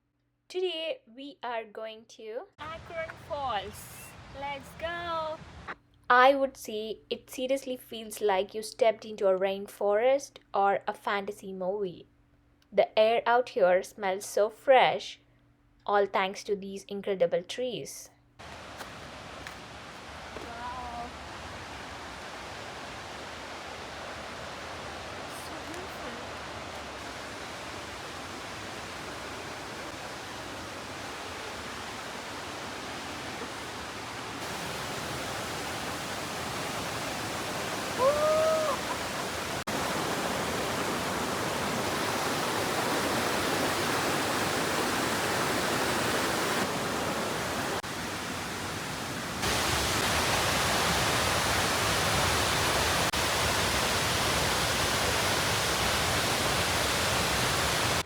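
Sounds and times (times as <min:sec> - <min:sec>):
waterfall rushing: 0:02.6 - 0:05.8, 0:18.4 - 0:58.0.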